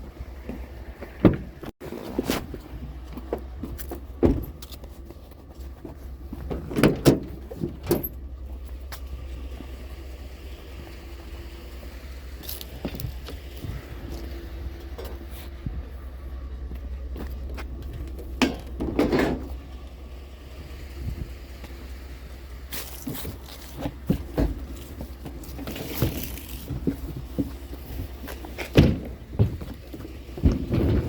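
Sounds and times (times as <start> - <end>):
truck engine idling: 2.6 - 31.0
sharp knocks and rattles: 23.0 - 31.0.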